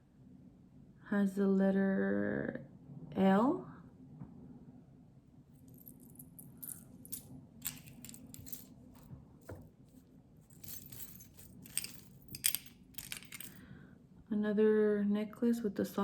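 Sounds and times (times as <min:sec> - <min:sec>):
jewelry clinking and jingling: 0:05.6 - 0:13.6.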